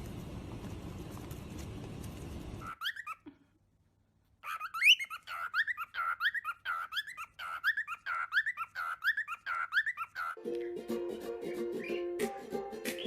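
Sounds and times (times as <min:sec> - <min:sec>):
cockatiel chirping: 0:02.6 - 0:03.3, 0:04.4 - 0:10.4.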